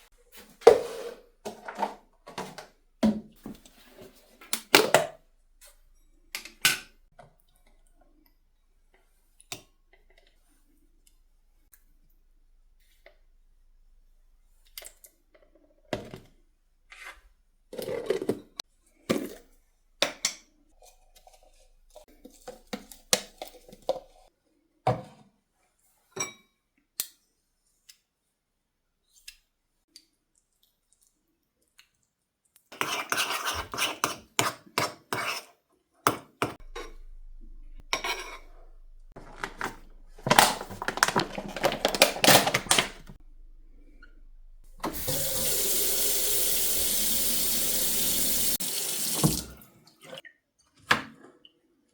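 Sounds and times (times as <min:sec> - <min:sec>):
dishes and cutlery clinking: 0:36.4 - 0:42.8
dishes clattering: 0:36.6 - 0:43.2.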